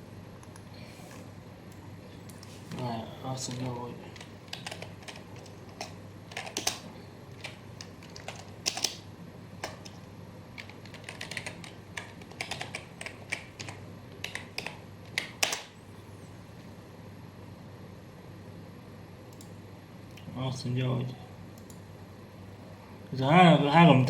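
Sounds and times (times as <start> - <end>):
keyboard typing clicks: 0.4 - 0.7, 3.5 - 9.0, 10.6 - 15.8.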